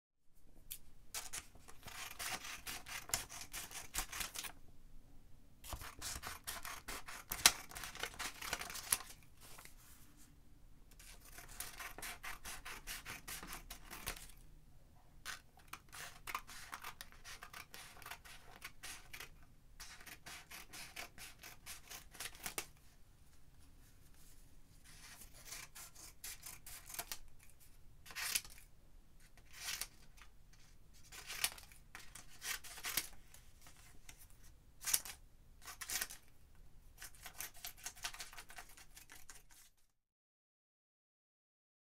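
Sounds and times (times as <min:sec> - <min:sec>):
scissors snipping paper: 0:00.7 - 0:04.6, 0:05.6 - 0:09.7, 0:10.9 - 0:14.4, 0:15.2 - 0:22.7, 0:24.9 - 0:28.7, 0:29.4 - 0:30.0, 0:31.0 - 0:33.9, 0:34.8 - 0:36.3, 0:37.0 - 0:39.8.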